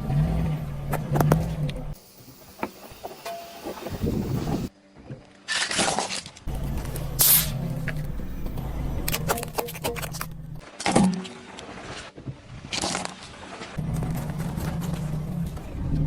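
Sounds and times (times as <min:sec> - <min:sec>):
car engine at low revs: 0:00.0 - 0:02.0, 0:06.5 - 0:09.3, 0:13.8 - 0:16.0
objects crunching under tyres: 0:02.6 - 0:16.0.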